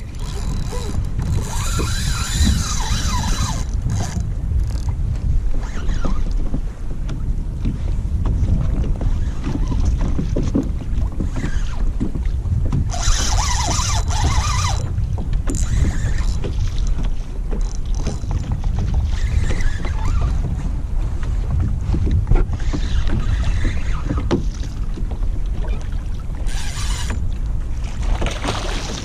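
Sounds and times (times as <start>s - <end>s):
wind buffeting microphone: 0.0s - 29.0s.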